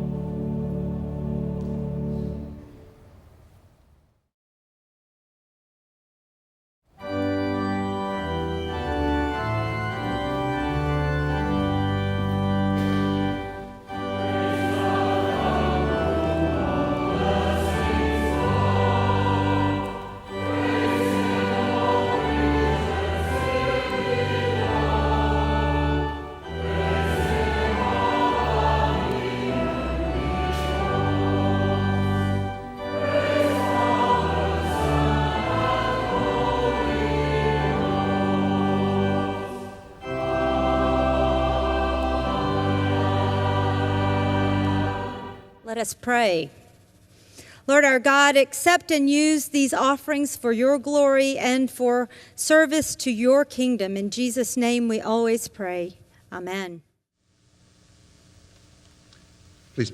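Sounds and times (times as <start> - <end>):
choir singing a hymn: 0.0 - 2.6, 7.0 - 45.6
organ accompaniment: 0.0 - 3.3, 7.0 - 45.6.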